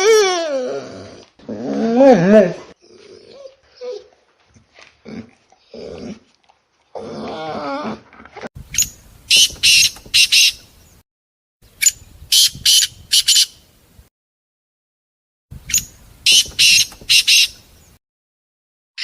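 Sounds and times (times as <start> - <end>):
sharp high-pitched animal calls: 8.8 - 10.6, 15.7 - 17.5.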